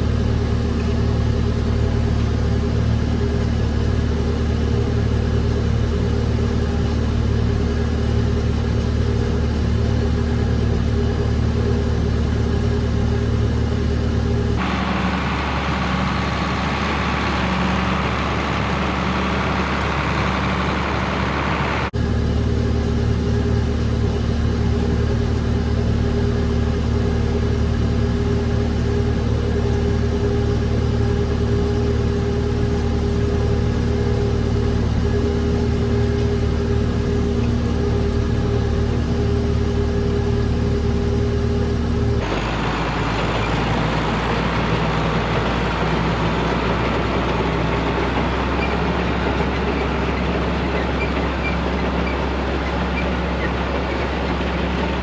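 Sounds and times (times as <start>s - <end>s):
tractor engine droning: 0.0s - 55.0s.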